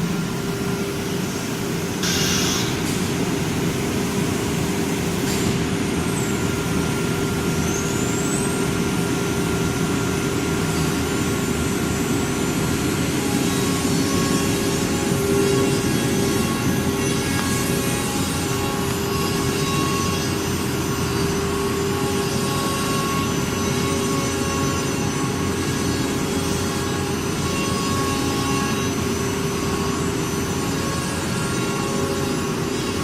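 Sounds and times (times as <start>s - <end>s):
compressed air hiss: 0.0s - 5.7s
router machine hum: 9.5s - 33.0s.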